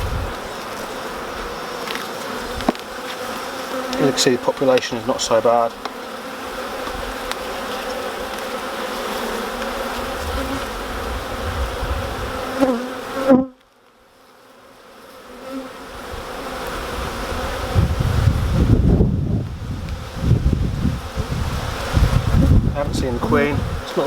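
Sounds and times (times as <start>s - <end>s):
wind rumbling on microphone: 0.0s - 0.5s, 9.6s - 12.7s, 16.0s - 23.9s
bees buzzing: 0.0s - 24.0s.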